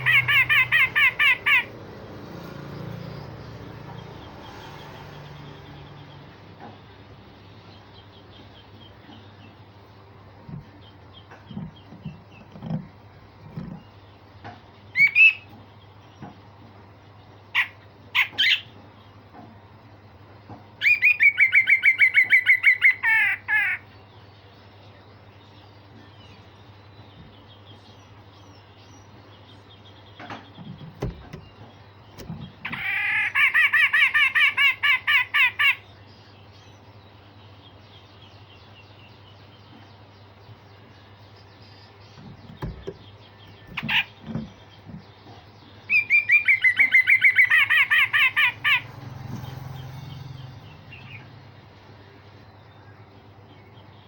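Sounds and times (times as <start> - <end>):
bird calling: 0.0 - 1.9, 14.9 - 15.6, 17.5 - 18.8, 20.8 - 24.0, 29.6 - 36.3, 41.8 - 53.0.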